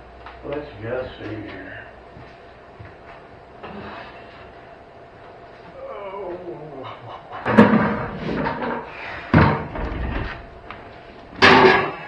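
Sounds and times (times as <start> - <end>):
loud knocks: 7.5 - 8.6, 9.3 - 11.9
metal rattling: 7.5 - 12.0.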